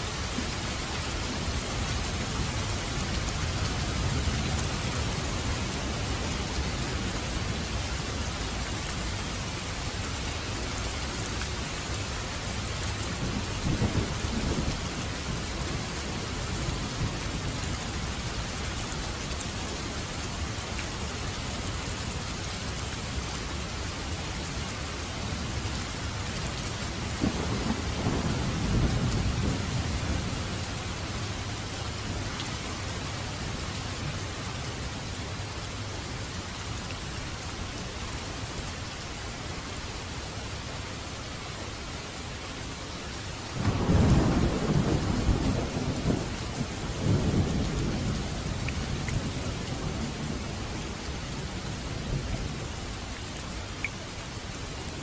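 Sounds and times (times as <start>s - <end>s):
heavy rain falling: 0.0s - 55.0s
thunder rumbling: 27.2s - 31.2s, 43.6s - 52.7s.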